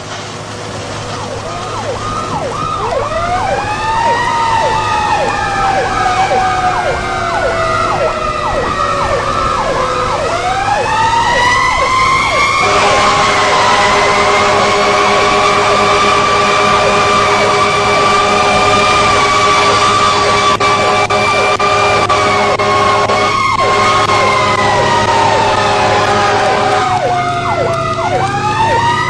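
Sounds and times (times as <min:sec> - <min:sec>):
electronic siren yelp: 0:01.2 - 0:29.0
mechanical siren wail: 0:01.2 - 0:29.0
multi-tone horn blast: 0:12.4 - 0:28.8.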